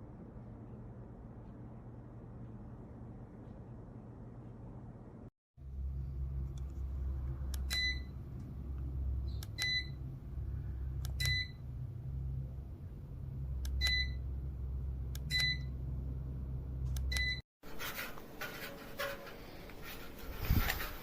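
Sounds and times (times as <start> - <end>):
low rumble: 0.0 - 17.2
click and high beep: 11.1 - 11.6, 13.7 - 14.2, 15.2 - 15.7, 17.0 - 17.4.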